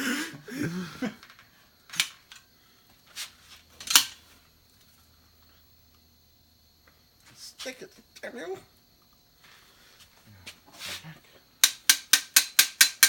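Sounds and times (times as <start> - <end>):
metal mechanism clicks: 3.8 - 4.2.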